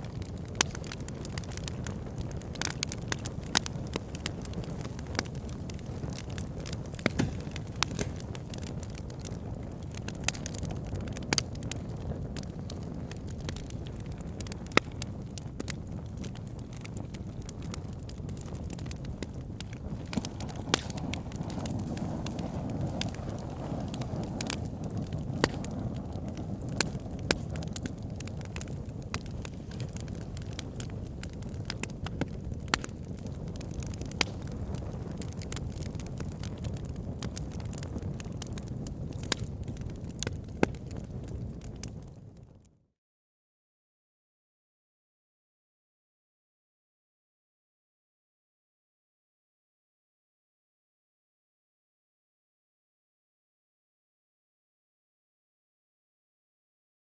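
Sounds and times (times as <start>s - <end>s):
campfire crackling: 0.0s - 42.7s.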